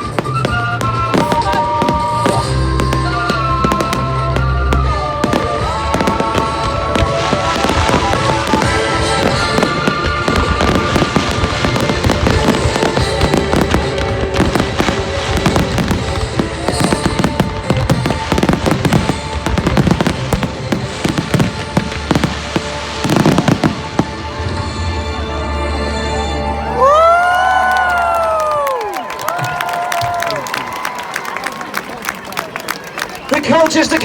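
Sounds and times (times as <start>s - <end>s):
fireworks bangs and crackles: 0.0s - 24.9s
music playing: 0.0s - 31.0s.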